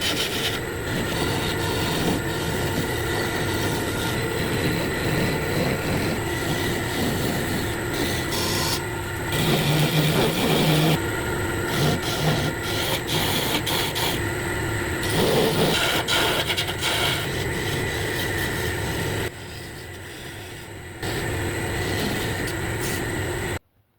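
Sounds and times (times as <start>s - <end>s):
tool scraping spinning wood: 0.0s - 23.6s
wood lathe running: 0.0s - 23.6s.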